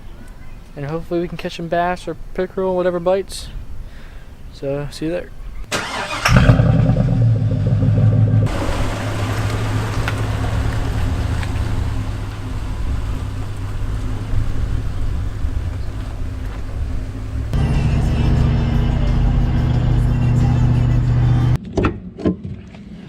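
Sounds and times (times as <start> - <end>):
road and wind noise: 5.3 - 21.6
vehicle engine running: 6.3 - 21.6.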